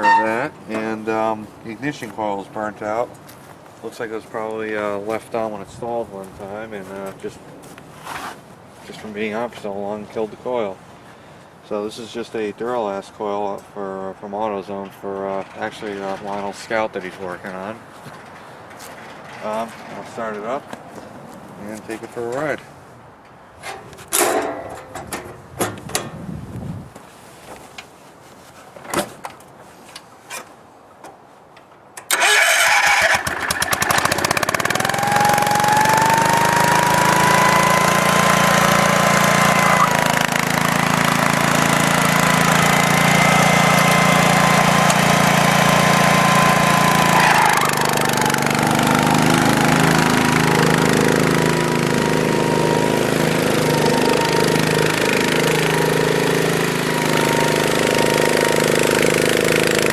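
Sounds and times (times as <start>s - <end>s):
single-cylinder engine running: 32.1s - 59.9s.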